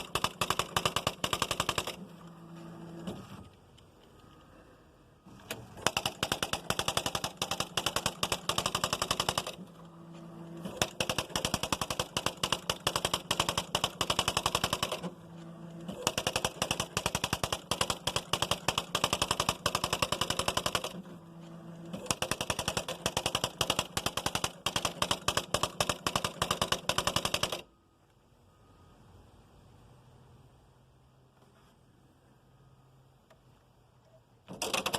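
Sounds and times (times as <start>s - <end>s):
electronic typewriter printing: 0.0s - 4.4s, 5.3s - 27.7s, 34.5s - 34.9s.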